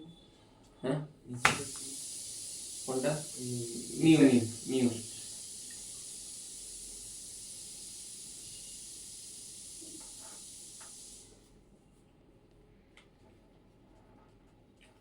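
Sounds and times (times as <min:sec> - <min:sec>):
steady hiss: 0:01.3 - 0:11.6.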